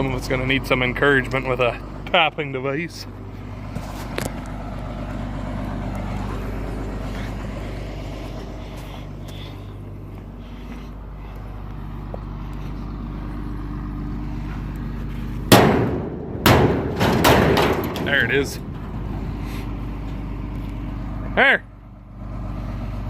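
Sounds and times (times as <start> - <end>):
heavy machine engine running: 0.0 - 23.0
sharp loud knock: 15.5 - 17.9.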